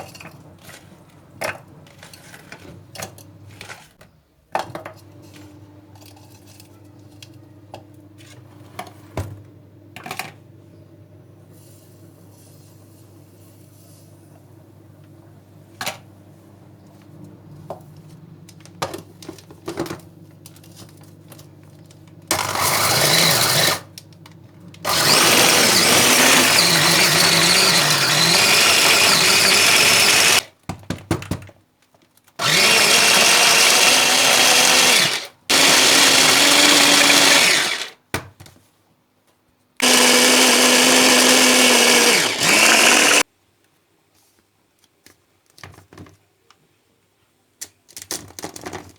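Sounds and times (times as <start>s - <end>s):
kitchen blender running: 18.4s - 30.5s, 32.4s - 38.0s, 39.8s - 43.2s.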